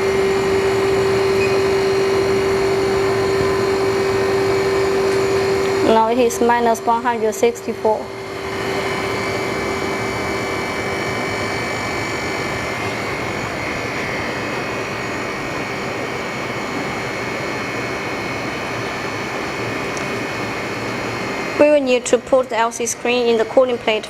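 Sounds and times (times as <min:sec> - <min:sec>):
freezer machine humming: 0:00.0 - 0:24.0
held tones from fans: 0:00.0 - 0:24.0.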